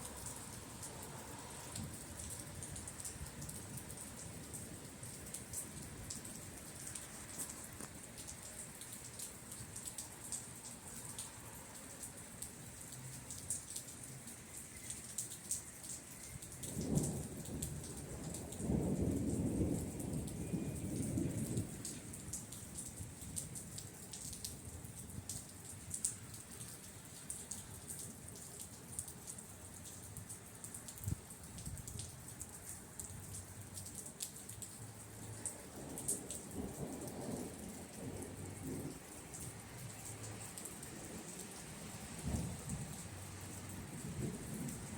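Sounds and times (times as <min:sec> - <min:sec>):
rain falling: 0:00.0 - 0:44.9
raindrops ticking on a surface: 0:00.0 - 0:44.9
thunder rumbling: 0:16.7 - 0:22.3, 0:42.2 - 0:43.0.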